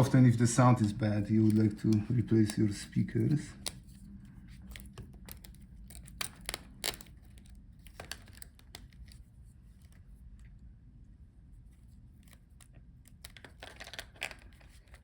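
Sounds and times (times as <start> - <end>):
faint low hum: 0.0 - 15.0
plastic parts clicking: 4.6 - 9.2, 13.1 - 15.0.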